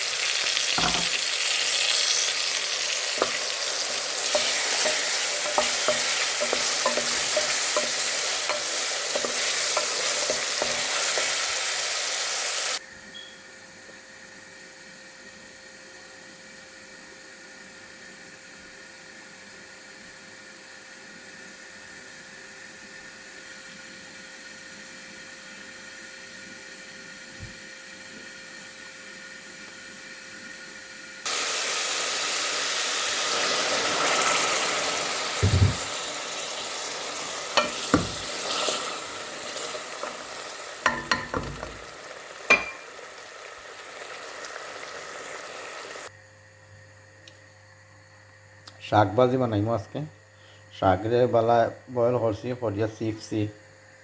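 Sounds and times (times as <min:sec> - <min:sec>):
food sizzling in hot oil: 0:00.0 - 0:12.8, 0:22.2 - 0:46.1
spatula knocking against pan: 0:04.2 - 0:10.9, 0:37.6 - 0:38.3.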